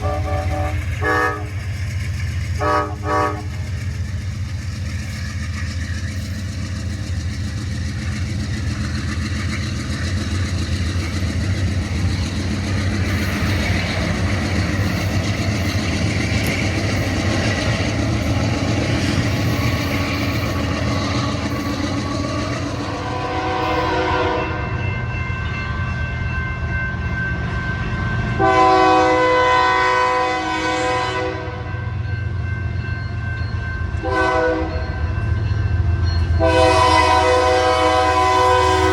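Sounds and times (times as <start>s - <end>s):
locomotive horn: 0.0s - 1.7s, 2.6s - 3.7s, 23.0s - 24.7s, 28.4s - 31.7s, 34.0s - 34.8s, 36.4s - 38.9s
train rumble and wheel clatter: 0.0s - 38.9s.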